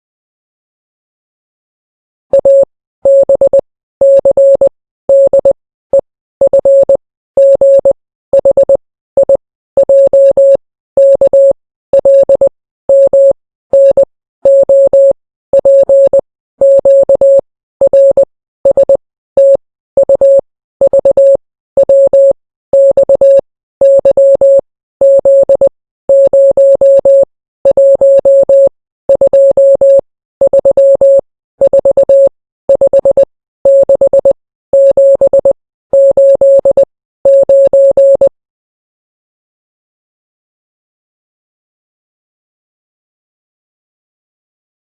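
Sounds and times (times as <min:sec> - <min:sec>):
morse code beeps: 0:02.4 - 0:38.3.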